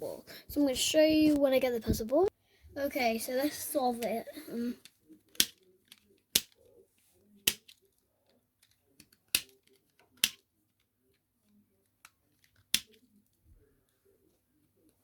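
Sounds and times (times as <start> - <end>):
plastic puzzle pieces clicking: 4.8 - 6.8, 7.4 - 13.2.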